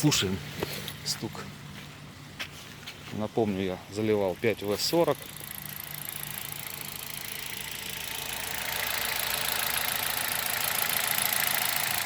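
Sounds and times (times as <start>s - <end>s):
car engine idling with knock: 4.7s - 12.0s.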